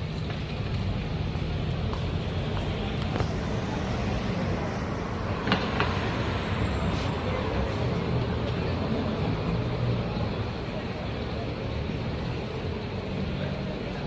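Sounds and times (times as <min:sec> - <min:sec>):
hum of passing vehicles: 0:00.0 - 0:14.0.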